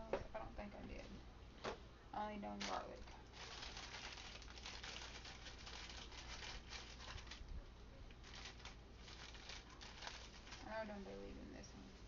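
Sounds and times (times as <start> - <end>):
dried leaves rustling: 2.6 - 7.5, 8.1 - 11.2.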